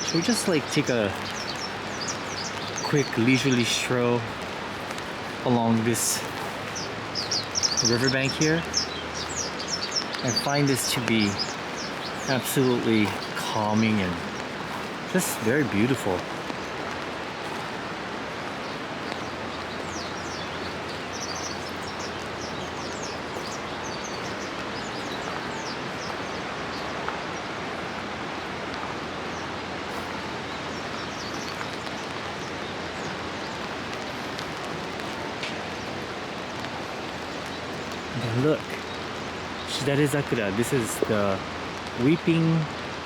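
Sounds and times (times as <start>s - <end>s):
rain hissing: 0.0s - 43.0s
small birds chirping: 0.0s - 43.0s.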